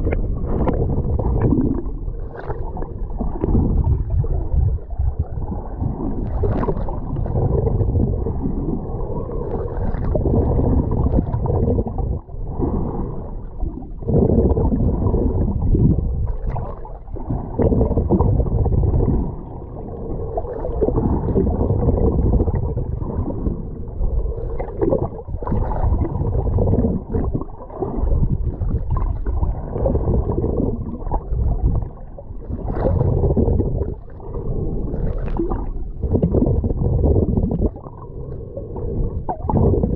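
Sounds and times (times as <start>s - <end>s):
water splashing: 0.0s - 8.3s
muffled sea water rumbling: 0.0s - 39.9s.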